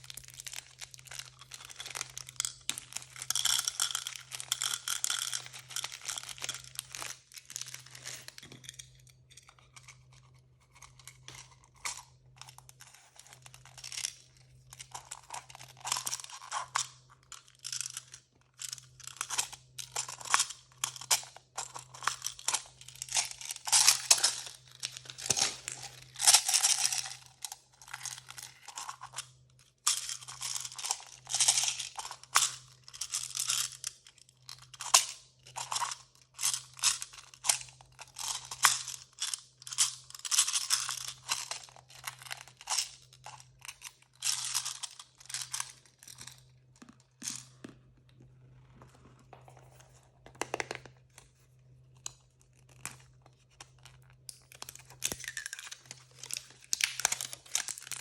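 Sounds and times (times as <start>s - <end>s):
crinkly packaging crackling: 52.0s - 58.0s.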